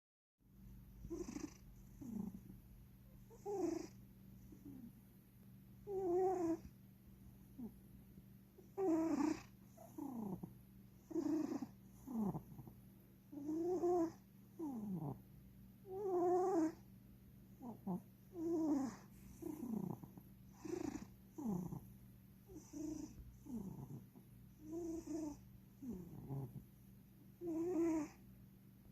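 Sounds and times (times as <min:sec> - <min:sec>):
cat snoring: 0:00.9 - 0:02.6, 0:03.2 - 0:04.9, 0:05.8 - 0:06.7, 0:07.5 - 0:07.8, 0:08.6 - 0:15.2, 0:15.8 - 0:16.9, 0:17.5 - 0:26.7, 0:27.4 - 0:28.2.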